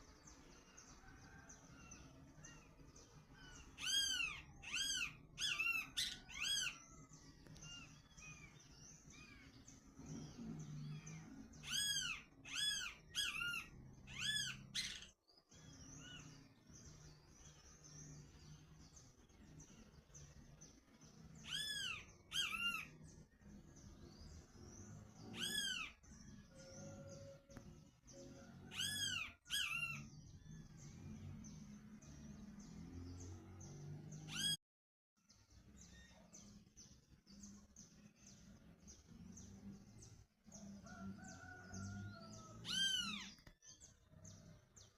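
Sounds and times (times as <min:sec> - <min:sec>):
high-pitched animal calls: 0:03.4 - 0:06.8, 0:10.8 - 0:15.1, 0:21.4 - 0:23.0, 0:25.3 - 0:26.0, 0:28.6 - 0:30.1, 0:42.6 - 0:43.4.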